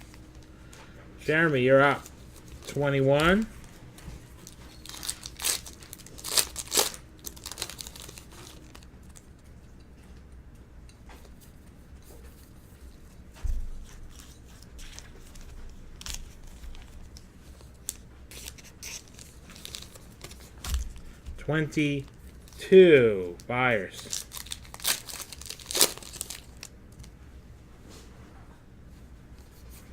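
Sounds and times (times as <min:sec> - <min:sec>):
cards rustling and clicking: 0:01.3 - 0:09.3, 0:13.8 - 0:21.2, 0:23.4 - 0:27.1
foil crinkling: 0:01.4 - 0:09.2, 0:13.8 - 0:21.2, 0:23.4 - 0:27.1
foil wrapper ripping: 0:04.3 - 0:09.2, 0:14.0 - 0:21.2, 0:23.8 - 0:27.0.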